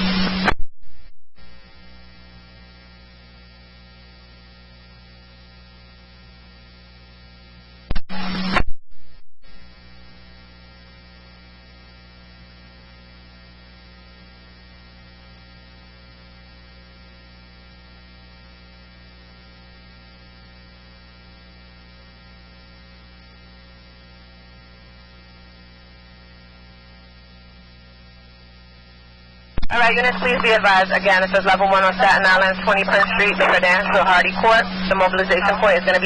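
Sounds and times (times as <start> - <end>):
electrical mains hum: 9.5 - 36.0.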